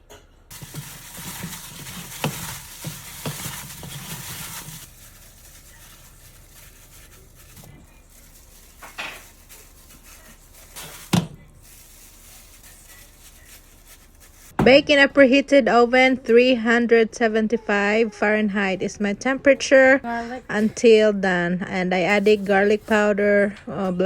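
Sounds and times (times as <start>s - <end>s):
rustling and scraping: 0.5s - 14.6s, 22.0s - 23.1s.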